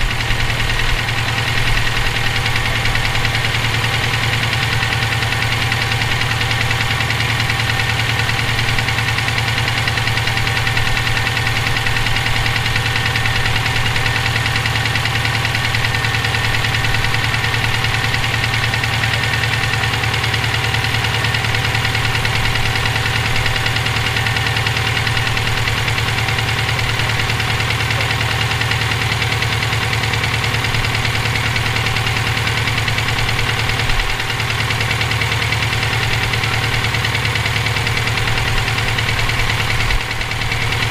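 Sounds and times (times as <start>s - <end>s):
car engine running: 0.0s - 40.9s
engine knocking: 0.0s - 40.9s.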